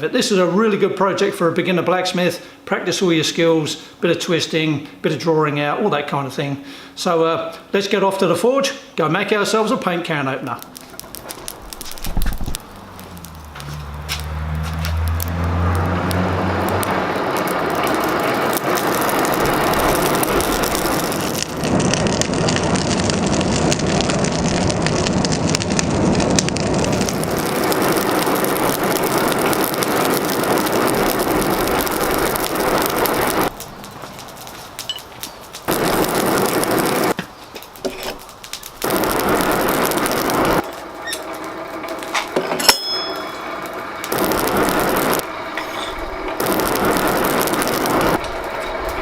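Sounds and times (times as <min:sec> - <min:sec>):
hand-cranked blower whirring: 0:10.8 - 0:22.9.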